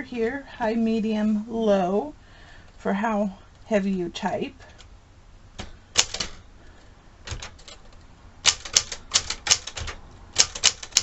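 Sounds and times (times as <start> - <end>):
manual typewriter keystrokes: 5.6 - 6.4, 7.2 - 11.0.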